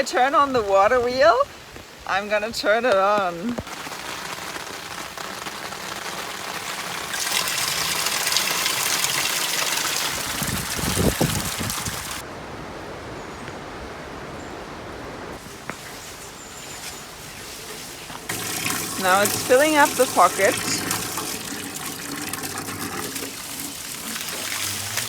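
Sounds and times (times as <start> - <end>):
water gushing onto water wheel: 3.6 - 12.2, 15.4 - 25.0
heavy water splashes: 3.6 - 12.3, 15.3 - 25.0.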